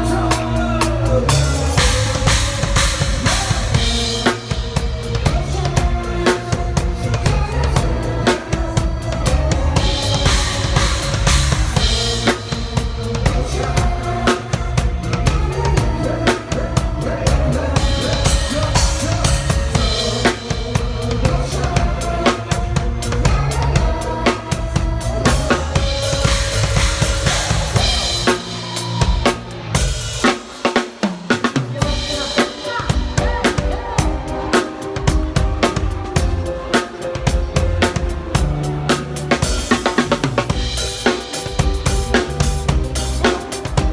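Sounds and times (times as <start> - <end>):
drum kit playing: 0.0 - 43.9
pop song backing track: 0.0 - 43.9.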